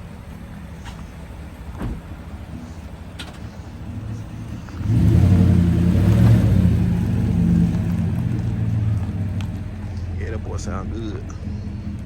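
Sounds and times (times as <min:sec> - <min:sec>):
pickup truck engine revving: 0:02.9 - 0:12.0.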